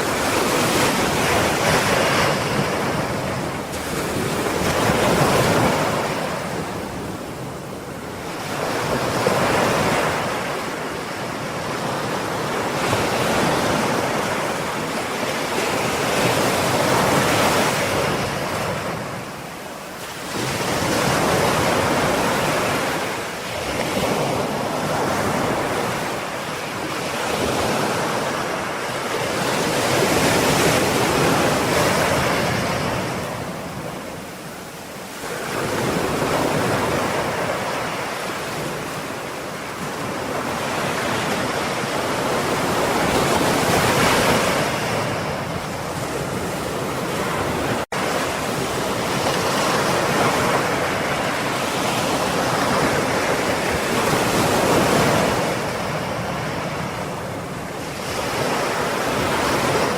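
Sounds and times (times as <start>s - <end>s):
ocean waves breaking: 0.0s - 59.9s.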